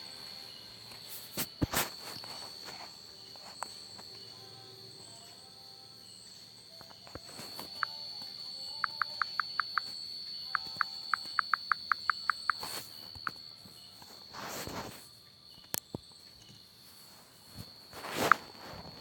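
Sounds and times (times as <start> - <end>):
insects shrilling: 0.0 - 19.0
short insect chirps: 0.0 - 19.0
sharp click: 8.8 - 9.9.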